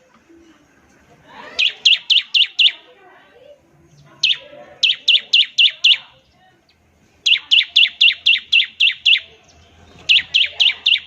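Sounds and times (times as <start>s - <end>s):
bird chirping in rapid runs: 1.6s - 2.9s, 3.9s - 11.0s.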